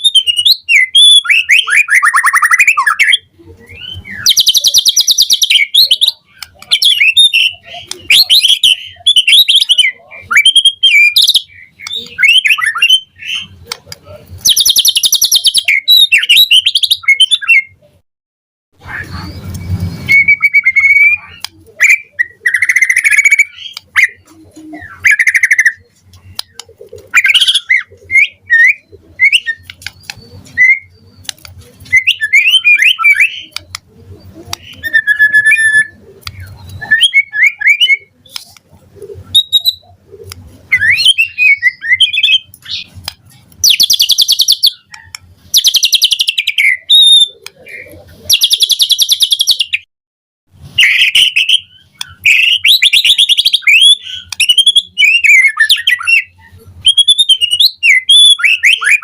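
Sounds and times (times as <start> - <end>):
bird singing whistled phrases: 0.0 - 13.6, 18.9 - 25.9, 27.1 - 31.2, 31.8 - 33.6, 34.6 - 38.1, 39.3 - 39.9, 40.7 - 42.9, 43.6 - 49.9, 50.8 - 59.0.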